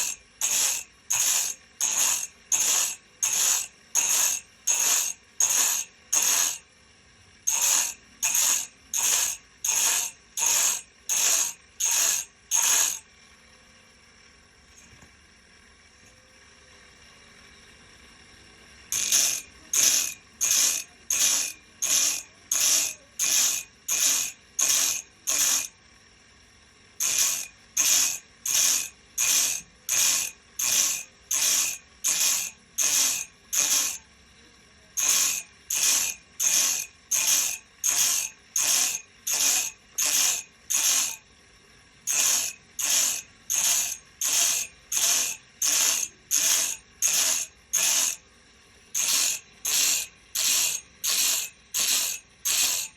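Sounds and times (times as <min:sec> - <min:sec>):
file rasping on saw blade: 0:00.0 - 0:06.6, 0:07.5 - 0:13.0, 0:18.9 - 0:25.7, 0:27.0 - 0:34.0, 0:35.0 - 0:41.2, 0:42.1 - 0:48.2, 0:49.0 - 0:52.9.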